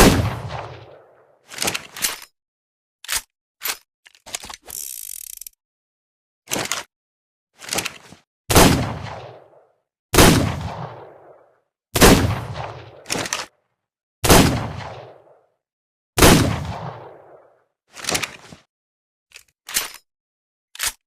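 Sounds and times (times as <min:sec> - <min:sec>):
revolver gunshots: 0:00.0 - 0:01.2, 0:08.5 - 0:09.6, 0:10.2 - 0:13.2, 0:14.2 - 0:15.4, 0:16.2 - 0:17.5.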